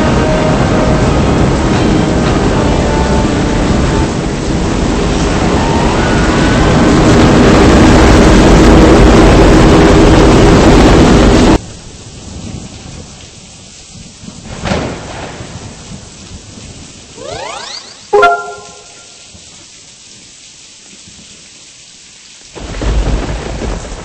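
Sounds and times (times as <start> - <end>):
wind roaring: 0.0 - 12.9
thunder rumble: 0.0 - 18.1, 22.6 - 24.0
heavy rain: 0.0 - 24.0.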